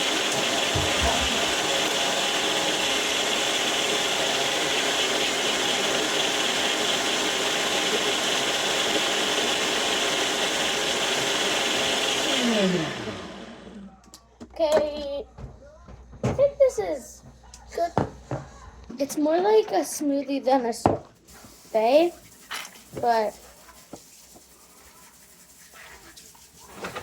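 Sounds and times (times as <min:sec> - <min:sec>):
blender running: 0:00.0 - 0:13.9.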